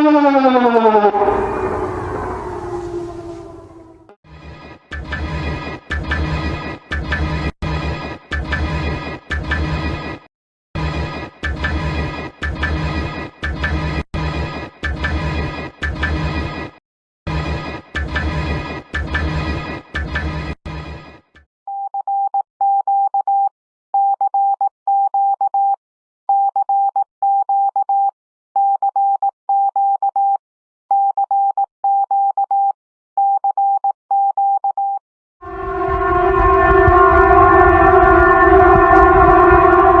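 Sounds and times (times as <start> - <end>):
emergency alert beeping: 0.0 - 4.2, 35.5 - 40.0
loud multi-tone siren: 0.0 - 4.2, 35.4 - 40.0
many-toned alarm: 0.0 - 4.2, 35.4 - 40.0.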